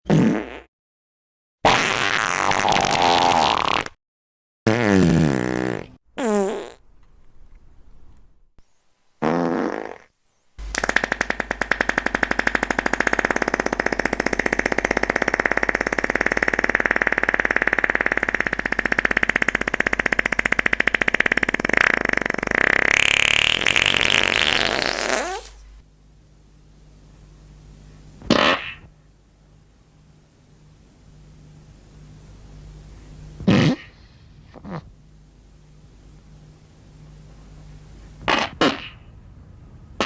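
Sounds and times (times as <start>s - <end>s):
fluttering fart: 0.1s - 0.7s, 1.6s - 4.0s, 4.7s - 6.8s, 9.2s - 25.8s, 28.2s - 28.9s, 33.4s - 35.0s, 38.2s - 39.1s.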